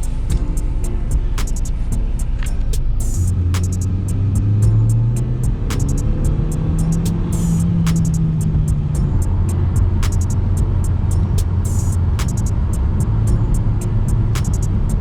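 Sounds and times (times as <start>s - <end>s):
music with ticking beat: 0.0s - 15.0s.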